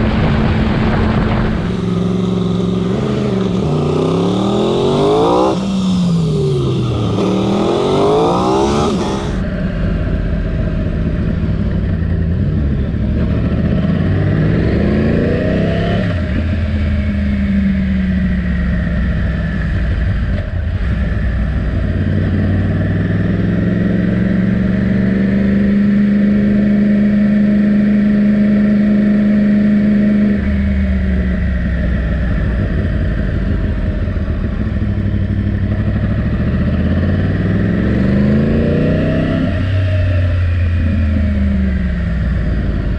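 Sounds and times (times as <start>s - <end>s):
motorcycle engine revving: 1.5s - 9.5s, 27.8s - 42.9s.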